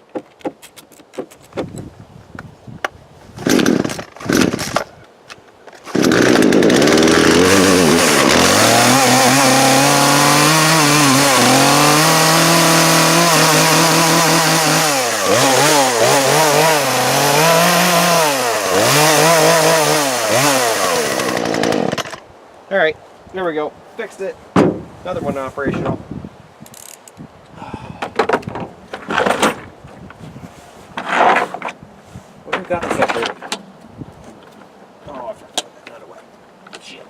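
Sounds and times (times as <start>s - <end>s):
chainsaw pull cord: 3.4s - 4.9s, 5.7s - 22.2s
chainsaw engine running: 5.9s - 22.2s.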